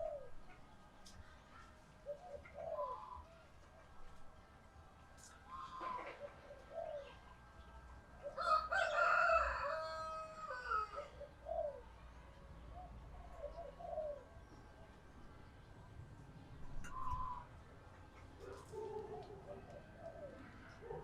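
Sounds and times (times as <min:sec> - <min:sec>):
dove cooing: 0:00.0 - 0:00.5, 0:02.0 - 0:03.3, 0:05.5 - 0:07.4, 0:08.2 - 0:12.0, 0:12.7 - 0:14.6, 0:16.8 - 0:17.6, 0:18.4 - 0:21.0.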